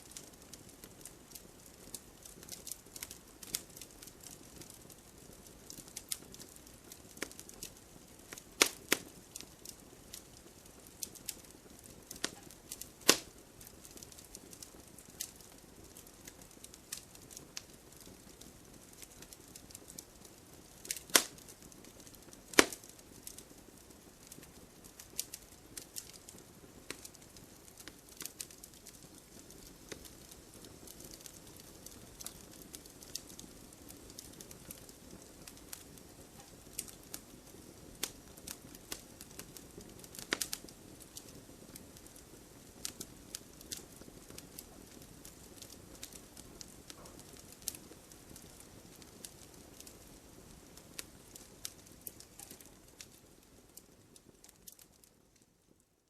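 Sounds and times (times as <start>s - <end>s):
campfire crackling: 0.0s - 56.0s
low fire hiss: 0.0s - 56.0s
loud sharp pops: 13.0s - 13.3s, 21.0s - 21.4s, 22.5s - 22.9s.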